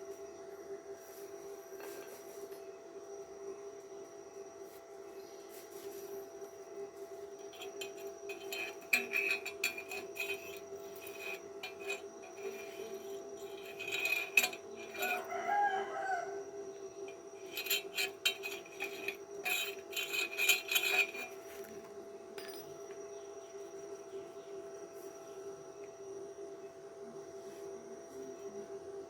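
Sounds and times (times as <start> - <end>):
steady electrical hum: 0.0 - 29.0
rooster crowing: 15.0 - 16.7.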